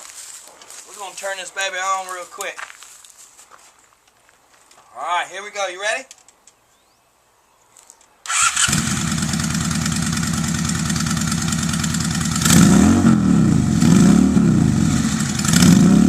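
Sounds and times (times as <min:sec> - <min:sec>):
motorcycle engine idling: 0:08.3 - 0:12.6
motorcycle revving: 0:08.3 - 0:16.0.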